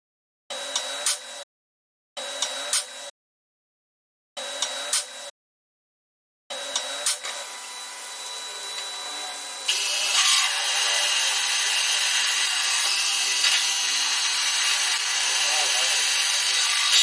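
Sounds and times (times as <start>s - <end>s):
power tool high whine: 7.3s - 17.0s.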